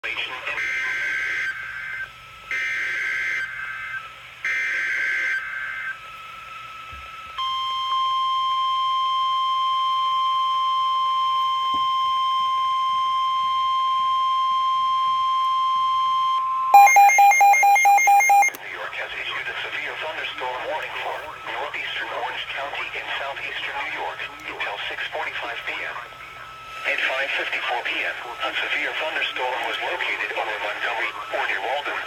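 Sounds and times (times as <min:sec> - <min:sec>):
steady warning alarm tone: 0:00.6 - 0:18.6
rapid beeping: 0:16.8 - 0:18.6.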